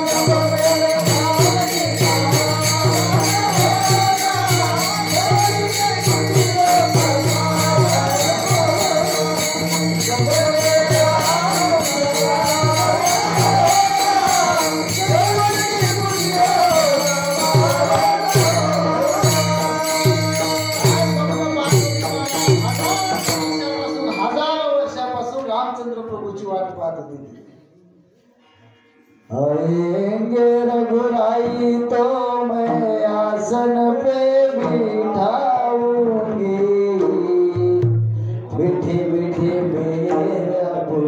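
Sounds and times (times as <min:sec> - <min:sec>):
drum beat: 0:00.0 - 0:24.2
hand cymbals jingling: 0:00.0 - 0:25.2.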